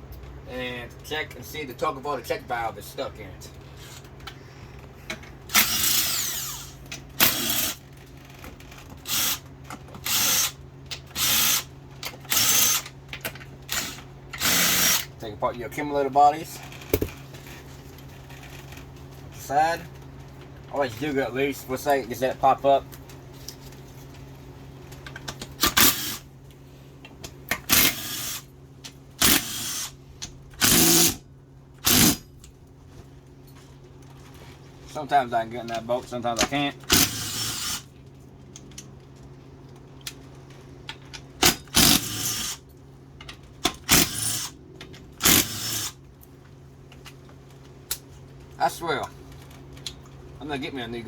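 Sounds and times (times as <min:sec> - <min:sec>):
low steady hum: 0:00.0 - 0:51.0
power ratchet bursts: 0:05.5 - 0:07.8, 0:09.0 - 0:12.9, 0:13.7 - 0:15.1, 0:25.6 - 0:26.3, 0:27.6 - 0:28.5, 0:29.2 - 0:30.0, 0:30.6 - 0:31.2, 0:31.8 - 0:32.2, 0:36.8 - 0:37.9, 0:41.4 - 0:42.6, 0:43.8 - 0:44.6, 0:45.2 - 0:46.0.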